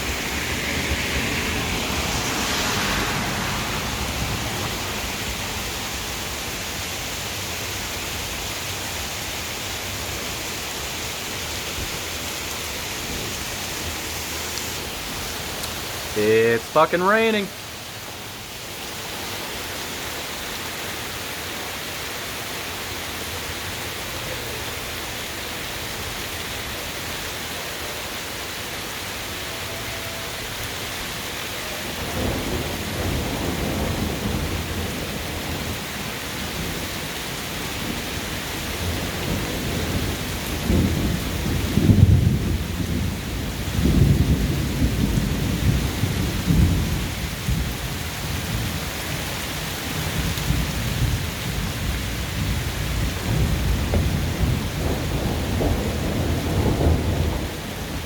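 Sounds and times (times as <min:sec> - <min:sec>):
heavy rain pouring: 0:00.0 - 0:58.0
thunder rumbling: 0:31.9 - 0:36.8, 0:37.7 - 0:49.2, 0:49.9 - 0:58.0.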